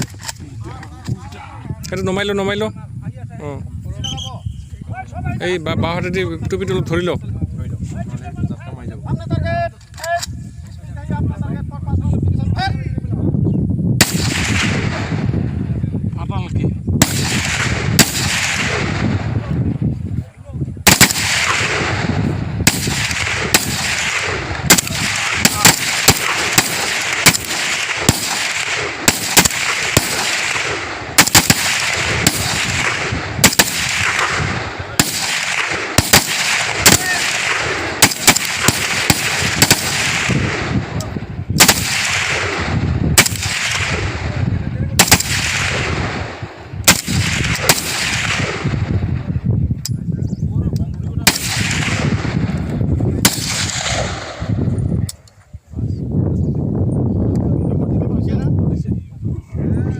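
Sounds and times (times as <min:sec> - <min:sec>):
rifle shots with rolling echo: 0:14.0 - 0:15.9, 0:17.0 - 0:19.9, 0:20.8 - 0:49.4, 0:51.2 - 0:55.3.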